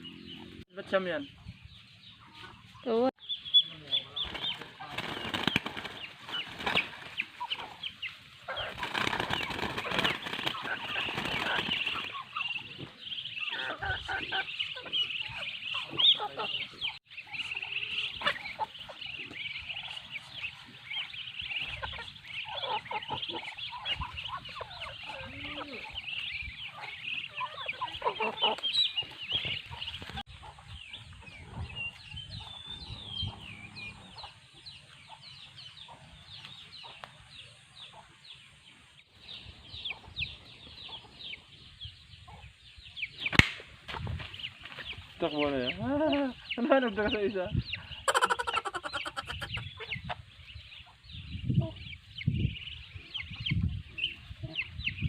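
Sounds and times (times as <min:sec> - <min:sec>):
chickens clucking: 0:00.0 - 0:55.0
high peeping calls: 0:00.0 - 0:55.0.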